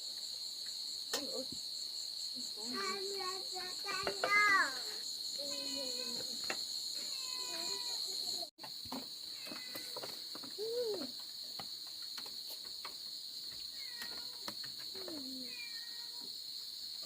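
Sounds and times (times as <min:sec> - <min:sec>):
insect chorus chirring: 0:00.0 - 0:17.0.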